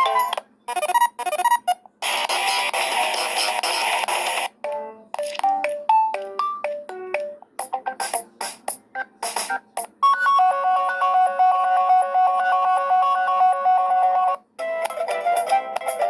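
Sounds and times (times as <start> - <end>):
synthesized ringtone melody: 0.0 - 0.4, 4.6 - 8.3, 8.9 - 16.0.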